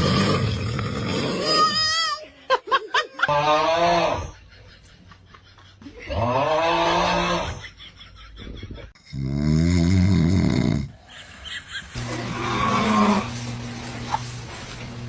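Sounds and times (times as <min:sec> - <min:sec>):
man snoring heavily: 0:00.0 - 0:01.6, 0:09.1 - 0:11.0, 0:12.0 - 0:13.4.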